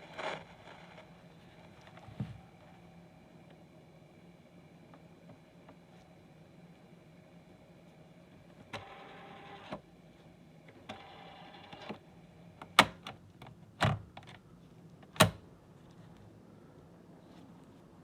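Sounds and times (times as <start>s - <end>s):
cassette player motor whirring: 8.4s - 13.2s.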